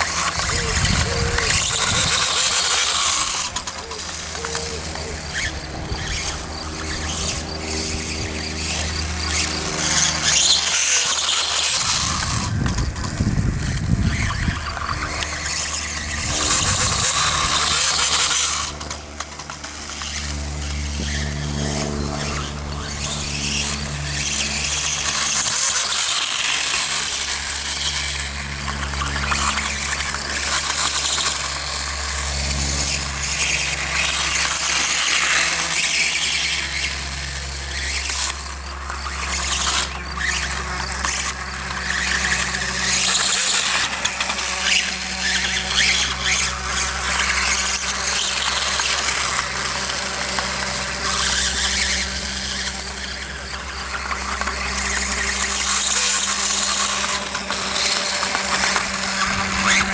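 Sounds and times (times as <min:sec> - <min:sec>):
rc motor high-pitched whine: 0:00.0 - 0:59.9.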